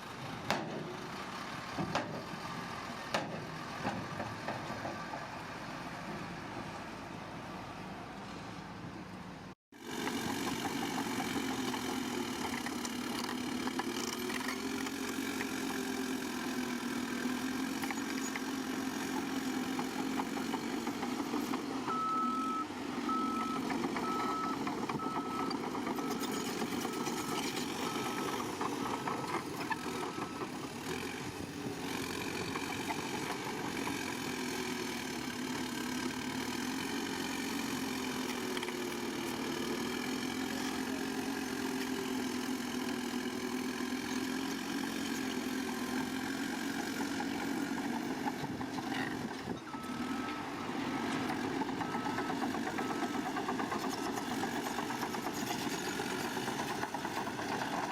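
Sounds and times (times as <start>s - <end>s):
heavy machine diesel engine running: 9.8s - 57.9s
reversing alarm beeping: 21.9s - 27.2s.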